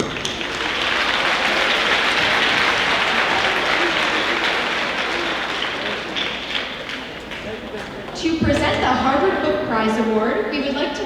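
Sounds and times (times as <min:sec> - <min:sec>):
audience applauding: 0:00.0 - 0:08.0.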